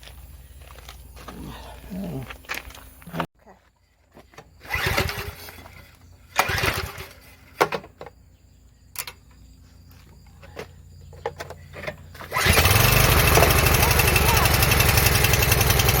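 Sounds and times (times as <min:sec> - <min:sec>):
recoil starter cranking engine: 0:04.6 - 0:07.5, 0:11.5 - 0:16.0.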